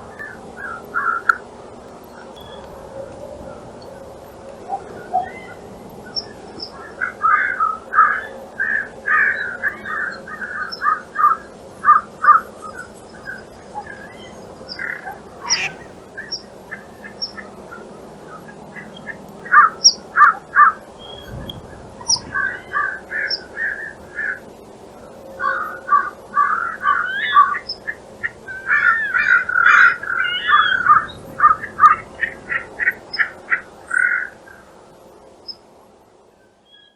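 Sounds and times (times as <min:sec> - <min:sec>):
wild birds calling: 0:15.4 - 0:16.2.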